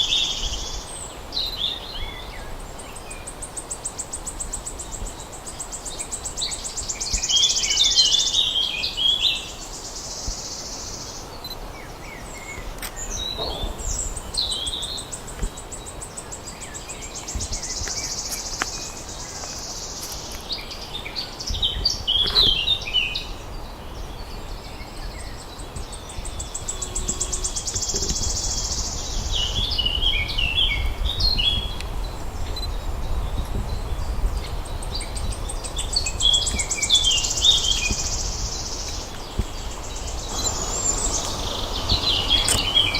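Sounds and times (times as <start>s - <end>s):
songbird buzzing trill and chirps: 0.0s - 42.9s
steady high buzz: 36.8s - 42.9s.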